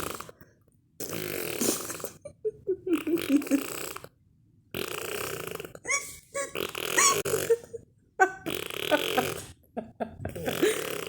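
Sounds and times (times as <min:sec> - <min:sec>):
baby making playful vocal noises: 0:05.8 - 0:07.3.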